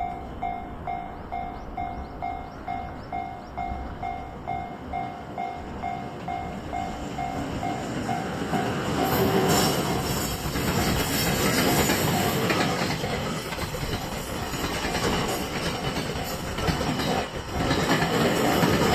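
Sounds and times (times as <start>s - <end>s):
train wheels clattering: 5.8s - 18.9s.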